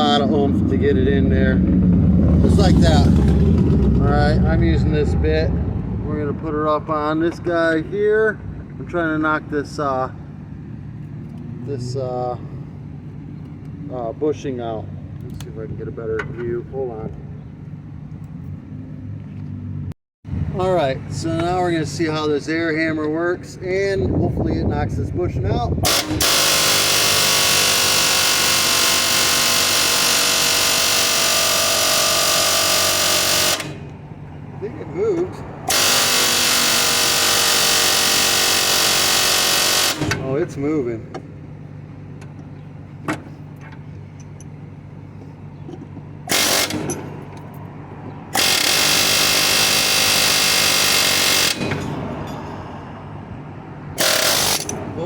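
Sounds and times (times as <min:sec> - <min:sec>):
steady low hum: 0:00.0 - 0:26.2, 0:37.9 - 0:50.4
air hammer hammering: 0:25.8 - 0:34.0, 0:35.7 - 0:40.4, 0:46.3 - 0:47.4, 0:48.3 - 0:52.6, 0:53.9 - 0:55.0.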